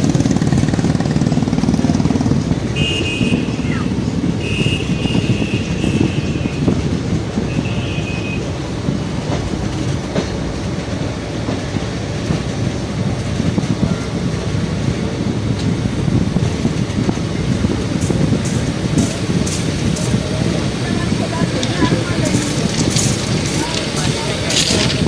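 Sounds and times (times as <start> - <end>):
train wheels rumbling on rail: 0.0 - 25.0
rail joint clicks: 8.4 - 25.0.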